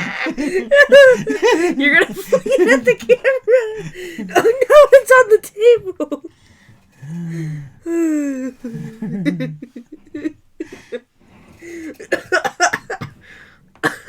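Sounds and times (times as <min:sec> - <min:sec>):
falling vocal cry: 0:00.0 - 0:01.4
people laughing and exclaiming: 0:00.0 - 0:06.2.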